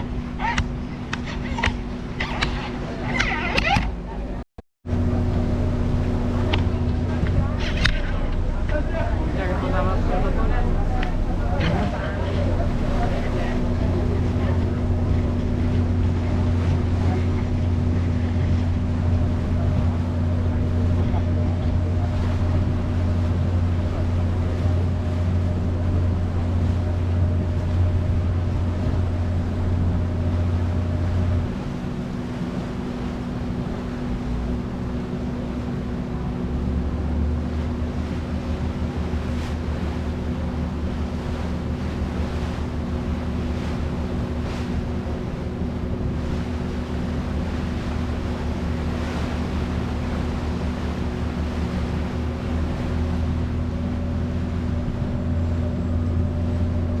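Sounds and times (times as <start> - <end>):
ferry engine humming: 0.0 - 57.0
wind: 0.0 - 57.0.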